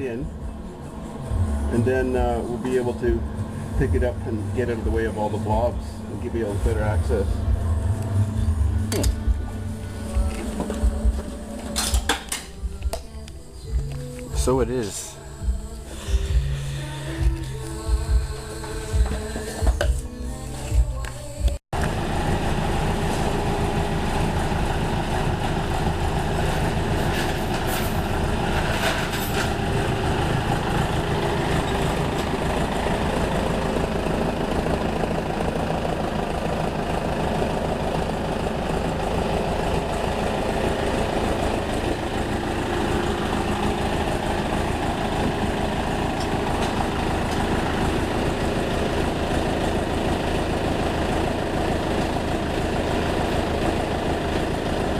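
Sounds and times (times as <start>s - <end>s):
heavy engine idling: 0.0s - 54.9s.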